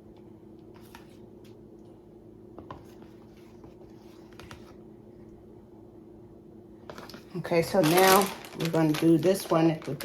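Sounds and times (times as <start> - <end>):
faint kitchen hum: 0.0 - 10.0
kitchen items clicking and scraping: 6.9 - 10.0.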